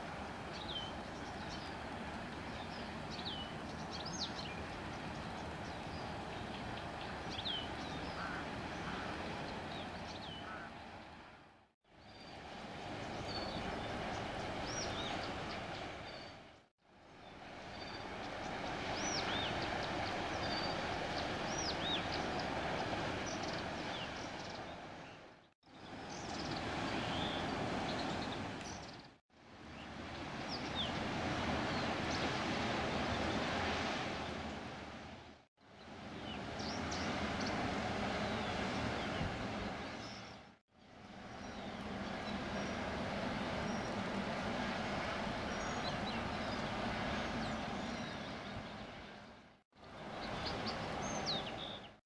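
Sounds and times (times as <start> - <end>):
songbirds chirping: 0.0 - 11.2, 12.0 - 16.6, 17.2 - 29.2, 41.3 - 52.0
motor ship rumble: 35.9 - 40.4, 41.0 - 51.7.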